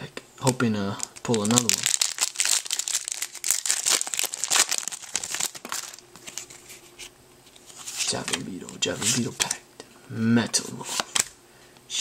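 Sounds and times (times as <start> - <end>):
wrapper crinkling and tearing: 1.0 - 6.5.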